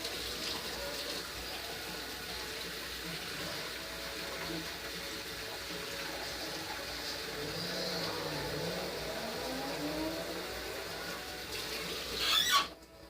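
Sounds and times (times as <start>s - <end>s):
water running from a tap: 0.0s - 13.0s.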